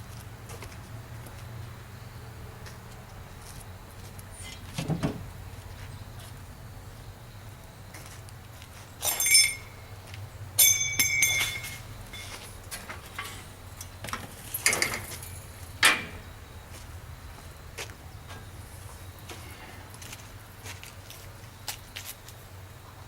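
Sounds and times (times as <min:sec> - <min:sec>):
steady low hum: 0:00.0 - 0:23.0
metal pieces clanking: 0:10.6 - 0:13.4.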